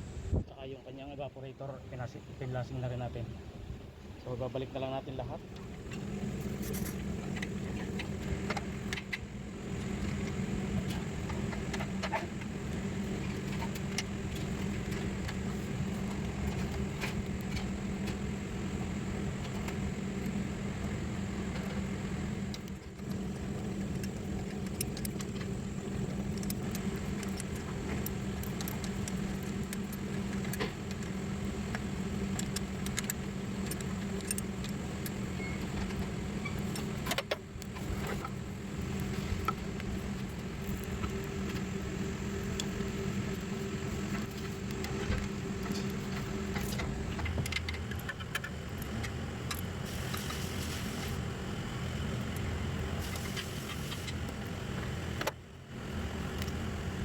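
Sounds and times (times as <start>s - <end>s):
low machine hum: 0.0s - 57.0s.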